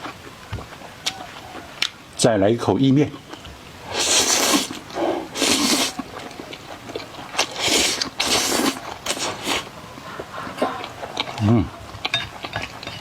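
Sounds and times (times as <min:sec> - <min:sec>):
wet chewing: 0:03.2 - 0:13.0
slurping noodles: 0:03.8 - 0:09.7.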